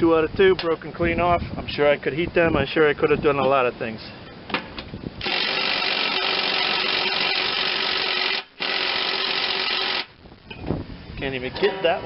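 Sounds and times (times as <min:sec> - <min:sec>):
power tool running: 0:05.2 - 0:10.1.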